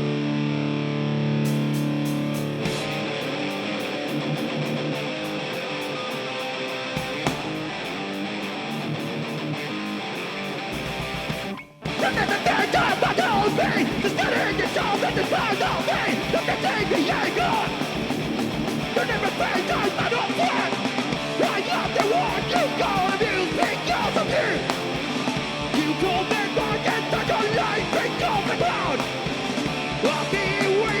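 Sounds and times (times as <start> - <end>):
distorted electric guitars: 0.0 - 31.0
drum hits: 2.1 - 3.2, 7.0 - 7.8.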